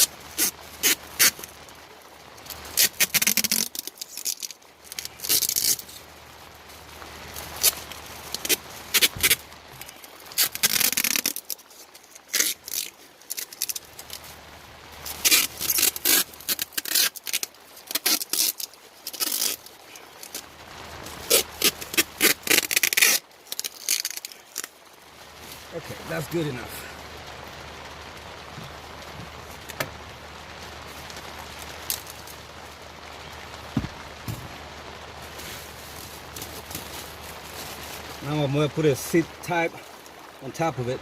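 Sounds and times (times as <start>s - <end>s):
tape scraping and rubbing: 0.0s - 1.6s, 2.4s - 6.1s, 7.3s - 14.3s, 15.0s - 24.8s, 30.8s - 32.4s, 33.3s - 38.4s
duct tape tearing off roll: 0.0s - 1.7s, 2.5s - 6.1s, 7.4s - 14.3s, 15.0s - 24.7s, 30.9s - 32.4s.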